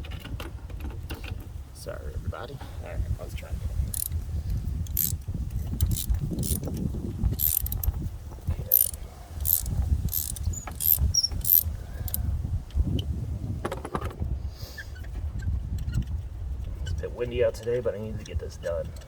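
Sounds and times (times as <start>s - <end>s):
wind rumble on microphone: 0.0s - 19.0s
ratchet clicking: 3.9s - 7.9s, 8.7s - 12.2s.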